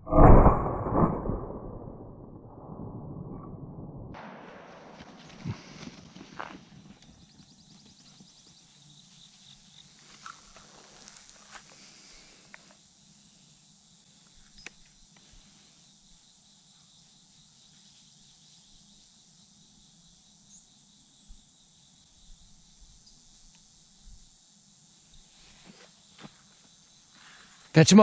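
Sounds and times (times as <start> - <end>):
field insects chirring: 4.9 - 28.0
small click: 14.4 - 14.9.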